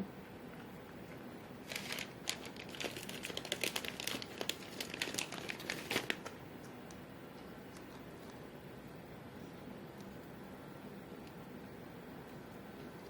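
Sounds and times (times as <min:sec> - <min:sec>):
fan running: 0:00.0 - 0:13.0
crinkling and crackling: 0:01.6 - 0:08.4.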